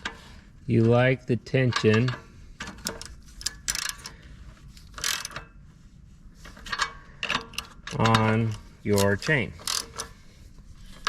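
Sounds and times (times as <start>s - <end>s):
socket ratchet clicking: 2.8s - 4.1s, 5.0s - 5.4s, 7.2s - 10.1s.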